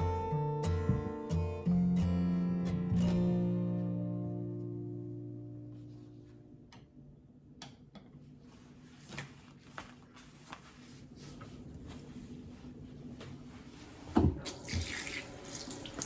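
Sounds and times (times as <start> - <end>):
guitar chord: 0.0 - 6.4.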